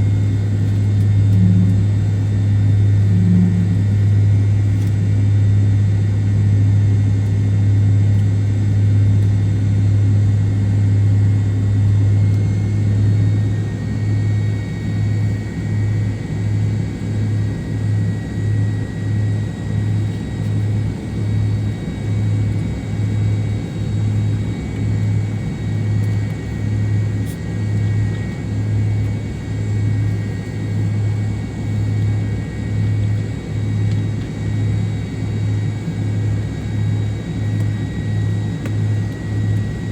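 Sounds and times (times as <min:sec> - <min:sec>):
high turbine whine: 0:00.0 - 0:06.4
aircraft cabin engine drone: 0:00.0 - 0:39.9.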